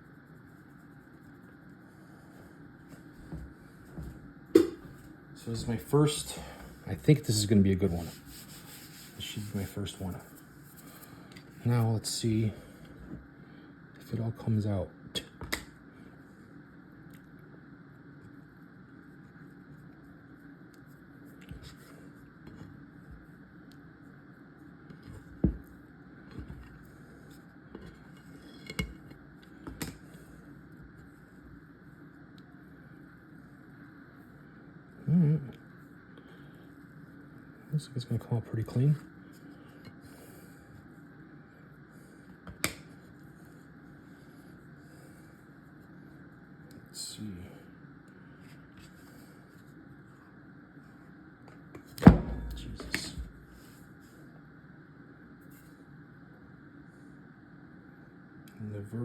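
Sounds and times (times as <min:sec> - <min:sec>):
faint steady hum: 0:00.0 - 0:59.0
dough handling noise: 0:06.4 - 0:11.6.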